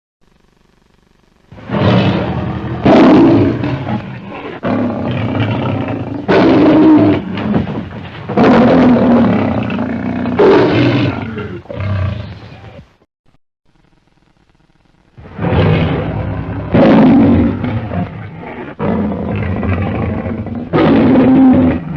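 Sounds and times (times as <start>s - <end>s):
lion roaring: 1.6s - 12.4s, 15.2s - 21.9s.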